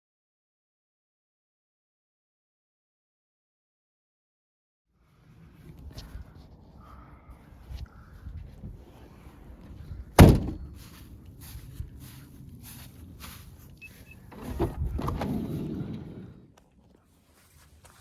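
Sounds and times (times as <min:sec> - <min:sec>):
loud thunk: 0:10.2 - 0:10.7.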